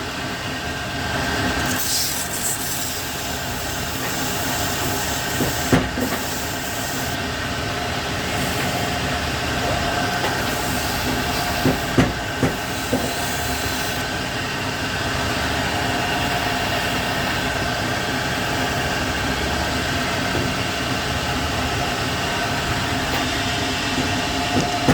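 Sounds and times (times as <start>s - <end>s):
lathe humming: 1.2s - 24.9s
hiss of abrasive rubbing: 1.7s - 7.2s.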